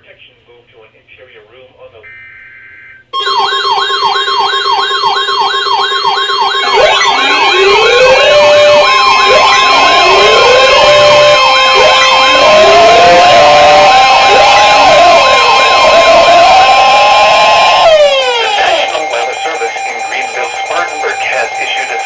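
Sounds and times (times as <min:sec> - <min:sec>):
electronic siren yelp: 0:02.1 - 0:22.0
siren rising wails: 0:02.8 - 0:22.0
steady tones: 0:04.5 - 0:22.0
data tones burst: 0:06.4 - 0:22.0.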